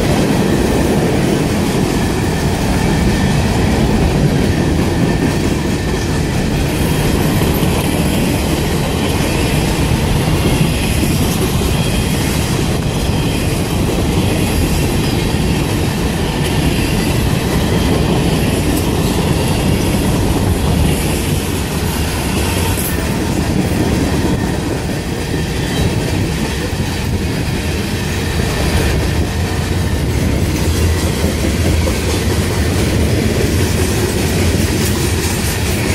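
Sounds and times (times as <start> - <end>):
freight train wheels clattering: 0.0 - 35.9.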